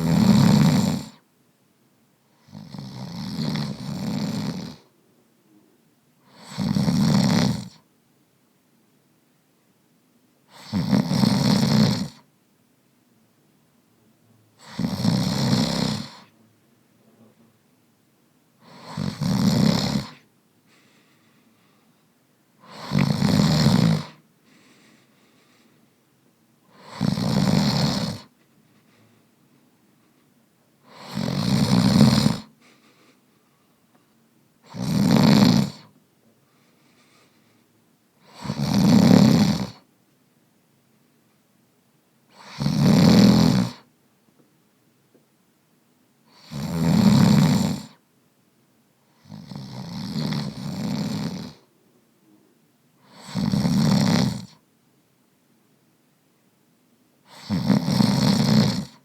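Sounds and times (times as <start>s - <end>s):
man snoring: 0.0s - 1.2s, 2.4s - 4.9s, 6.3s - 7.8s, 10.5s - 12.2s, 14.6s - 16.3s, 18.6s - 20.2s, 22.6s - 24.2s, 26.7s - 28.3s, 30.8s - 32.5s, 34.6s - 35.9s, 38.2s - 39.9s, 42.3s - 43.9s, 46.3s - 48.0s, 49.2s - 51.7s, 53.0s - 54.6s, 57.3s - 59.0s.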